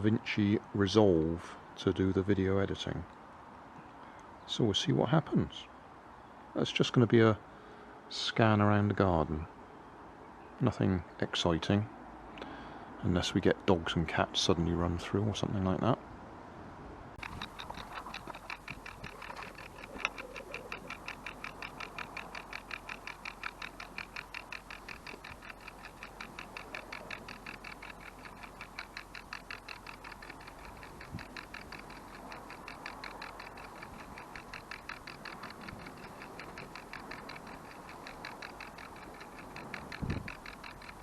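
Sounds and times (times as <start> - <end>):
kitchen timer ticking: 17.2 - 41.0.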